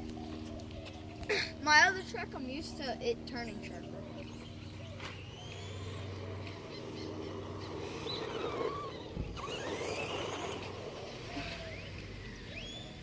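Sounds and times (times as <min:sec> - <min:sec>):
electric motor whining: 0:03.9 - 0:13.0
tyres rolling over ground: 0:06.1 - 0:12.3.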